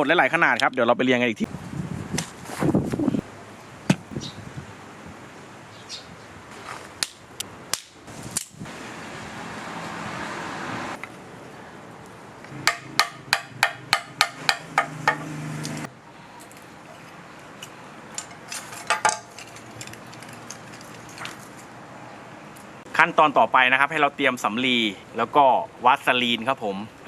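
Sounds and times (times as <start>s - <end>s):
sticks snapping: 7.0s - 8.6s.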